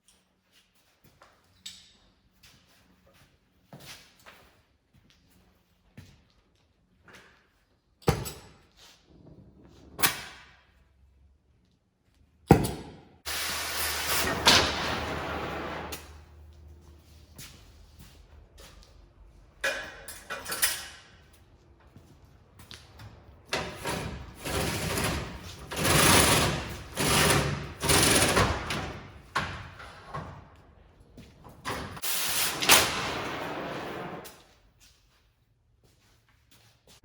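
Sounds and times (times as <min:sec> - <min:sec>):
cutting torch hissing: 0:13.3 - 0:14.6.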